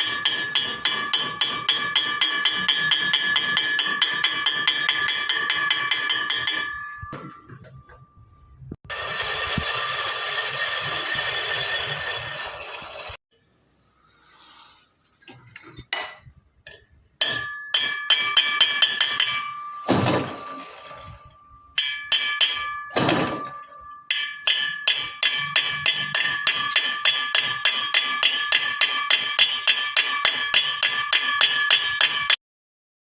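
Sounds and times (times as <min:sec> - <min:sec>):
hammer ringing on metal: 0:00.0 - 0:07.4, 0:17.2 - 0:32.4.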